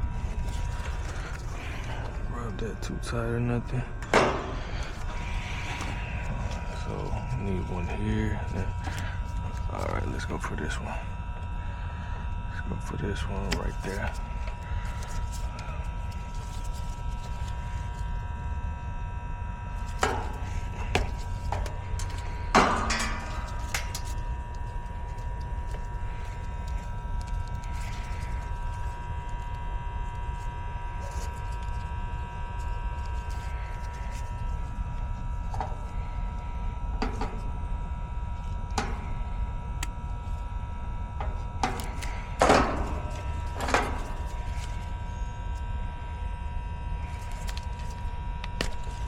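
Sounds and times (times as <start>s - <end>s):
steady low hum: 0.0s - 49.0s
clicks and knocks of tools: 20.0s - 24.2s.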